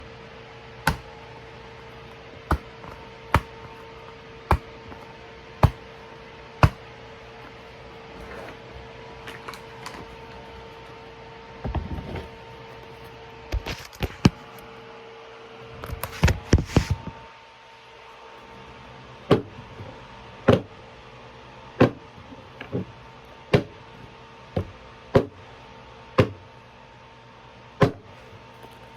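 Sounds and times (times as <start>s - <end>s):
steady hum: 0.0s - 28.9s
sharp knocks: 0.9s - 1.1s, 5.6s - 5.8s
scraping rustling noise: 7.3s - 10.8s, 16.0s - 17.2s.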